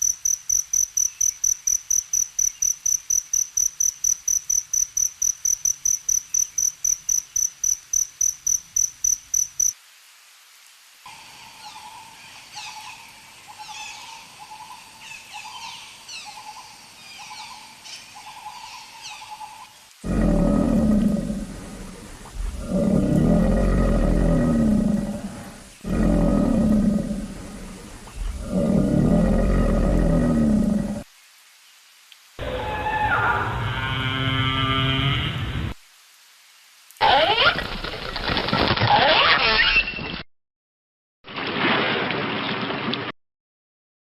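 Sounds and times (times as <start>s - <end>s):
large animal roaring: 20.0s - 31.1s, 32.4s - 35.7s.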